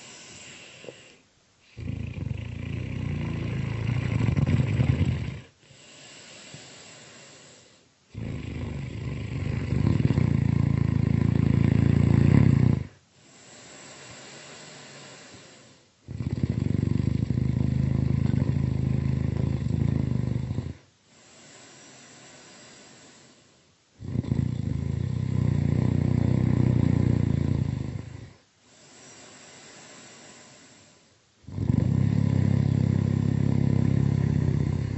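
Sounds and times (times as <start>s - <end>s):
quiet breath out: 0.0s - 1.8s, 4.5s - 7.9s, 13.1s - 16.0s, 20.7s - 23.8s, 27.9s - 31.3s
loud low snoring: 0.0s - 23.4s, 24.0s - 34.9s.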